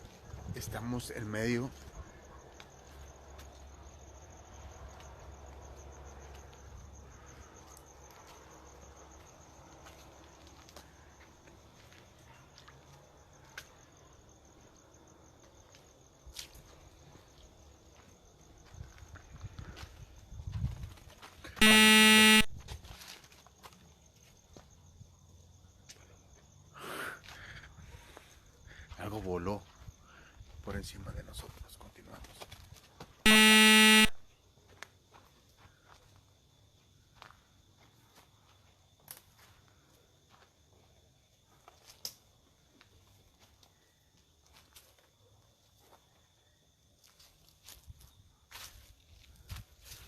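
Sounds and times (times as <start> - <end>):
crickets chirping: 0.0 - 50.0
harsh electronic buzzer: 21.6 - 22.6, 33.3 - 34.2.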